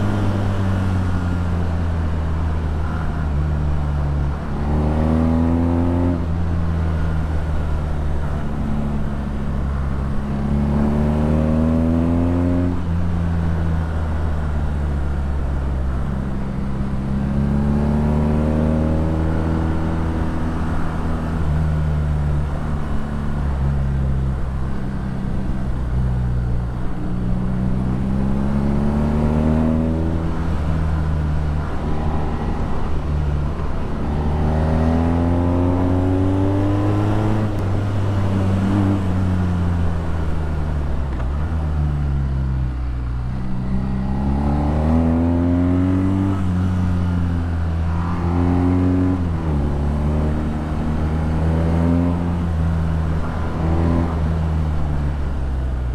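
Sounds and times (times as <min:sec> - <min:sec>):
motorcycle engine accelerating: 0:43.1 - 0:54.9.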